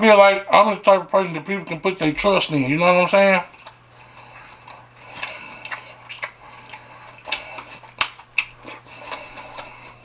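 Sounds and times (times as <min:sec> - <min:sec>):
chewing with wet mouth clicks: 0:03.5 - 0:10.0.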